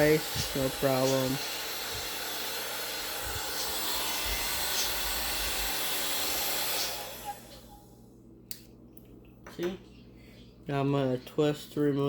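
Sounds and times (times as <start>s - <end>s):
hand vacuum whining: 0.0s - 7.9s
vacuum motor winding down: 0.0s - 8.0s.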